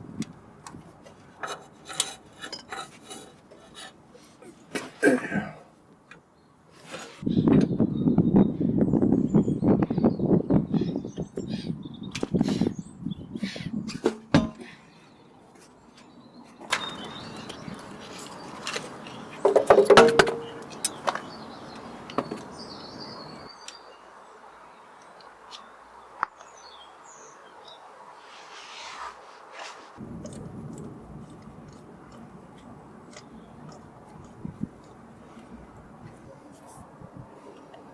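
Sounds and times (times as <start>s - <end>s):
faint birdsong: 14.8s - 30.0s
hand tools clattering: 16.7s - 23.4s.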